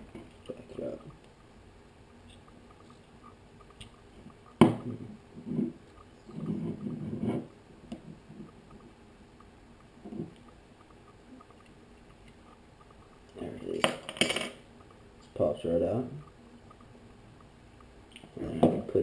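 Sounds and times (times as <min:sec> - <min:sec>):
rubbing and fiddling with tool: 0:05.0 - 0:08.6.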